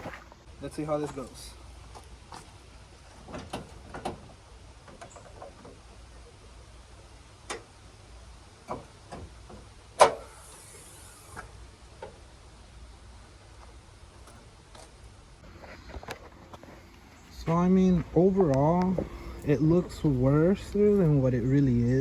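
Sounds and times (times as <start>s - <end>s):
knocks and clicks of tools on truck: 3.2s - 4.3s, 8.7s - 10.3s.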